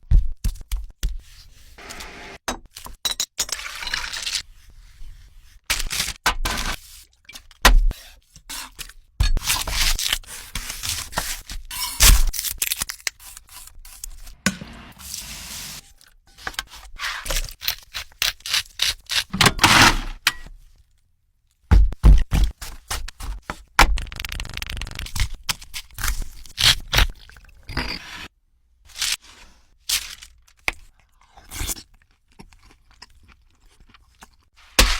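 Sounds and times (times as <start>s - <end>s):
kitchen scraping: 13.4s - 17.9s, 19.2s - 20.6s, 34.6s - 34.9s.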